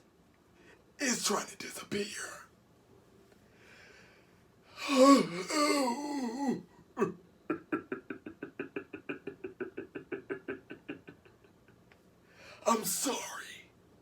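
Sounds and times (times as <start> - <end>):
person groaning: 4.8 - 7.2
croaking voice pulses: 6.3 - 11.2.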